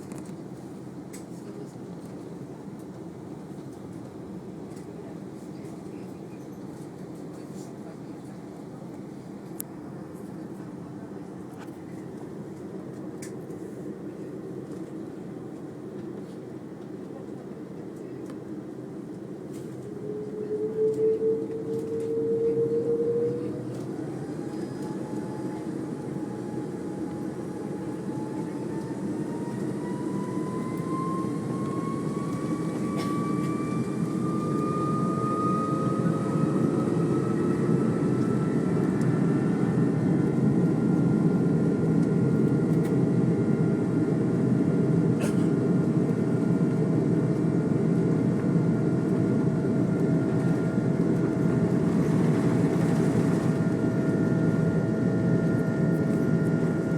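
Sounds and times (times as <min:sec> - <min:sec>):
jet engines spooling up: 0:19.8 - 0:44.9, 0:45.6 - 0:56.9.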